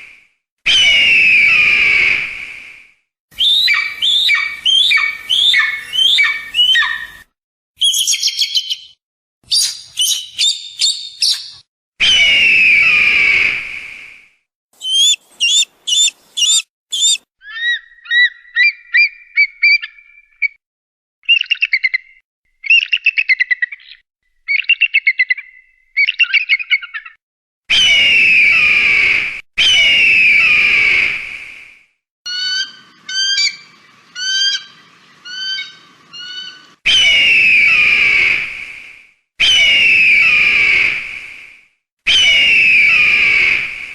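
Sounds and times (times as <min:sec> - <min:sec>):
high piping bird calls: 0:03.4 - 0:13.0, 0:14.8 - 0:20.6, 0:32.3 - 0:38.2
bird screams sliding down: 0:14.8 - 0:17.3.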